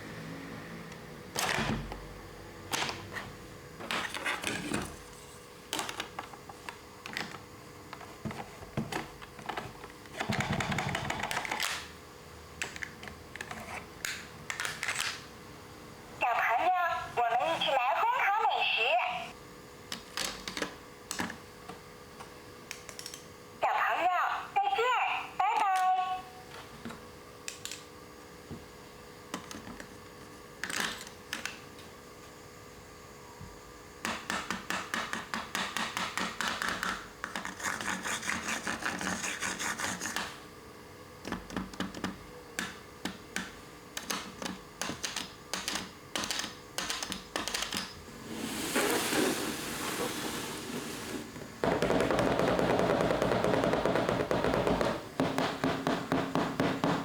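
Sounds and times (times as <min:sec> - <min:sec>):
rustling scrape: 0:48.2 - 0:51.4.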